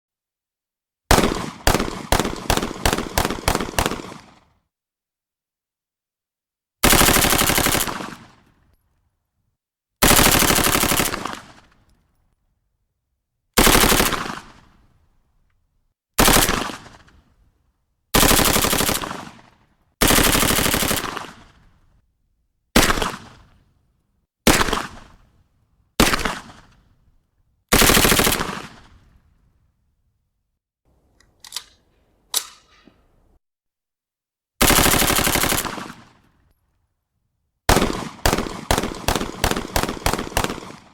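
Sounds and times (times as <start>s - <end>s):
submachine gun automatic bursts: 1.1s - 4.5s, 6.8s - 8.4s, 10.0s - 11.7s, 13.6s - 14.6s, 16.2s - 17.0s, 18.2s - 19.4s, 20.0s - 21.5s, 27.7s - 28.8s, 34.6s - 36.2s, 37.7s - 40.9s.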